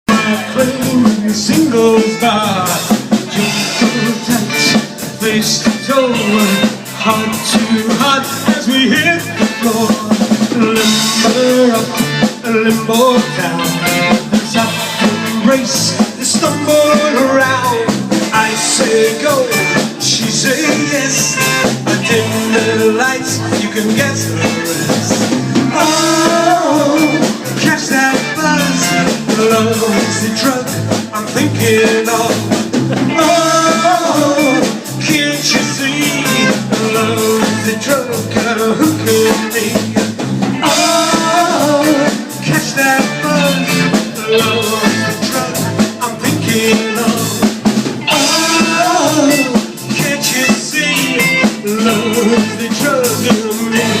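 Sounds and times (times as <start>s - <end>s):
live rock band playing: 0.1s - 54.0s.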